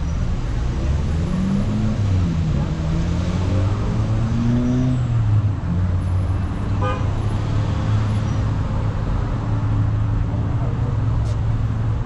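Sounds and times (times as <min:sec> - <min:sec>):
traffic engine drone: 0:00.0 - 0:12.0
car horn toot: 0:06.8 - 0:07.1.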